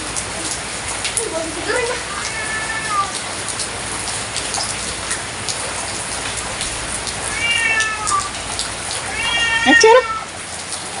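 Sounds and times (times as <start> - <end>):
steady rain: 0.0 - 11.0
water drips: 0.0 - 11.0
cat meowing: 2.0 - 3.2, 7.2 - 10.4.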